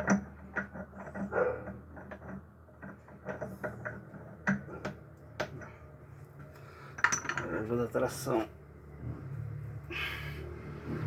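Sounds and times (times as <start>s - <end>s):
metal parts clinking and knocking: 0.0s - 6.0s, 6.9s - 8.2s.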